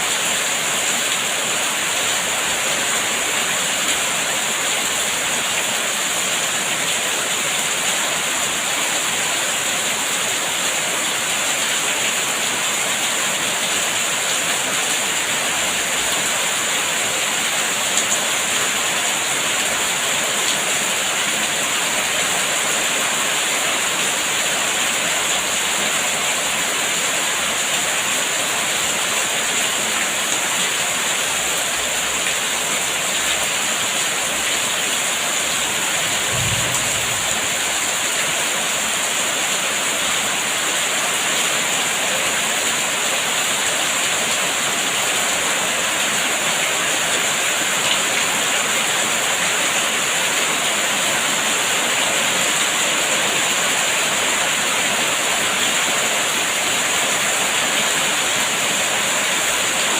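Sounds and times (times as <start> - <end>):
heavy rain falling: 0.0 - 59.9
soft low thud: 36.1 - 37.8.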